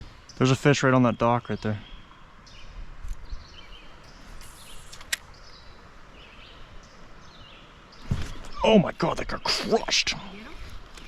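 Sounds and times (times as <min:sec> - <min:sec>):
sharp click: 0:04.4 - 0:05.3.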